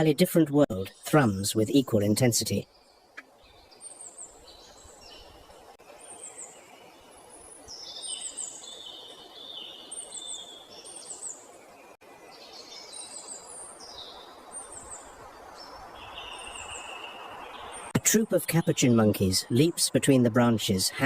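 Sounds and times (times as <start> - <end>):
forest ambience hiss: 1.0 - 20.0
lower bird warbling calls: 12.3 - 18.0.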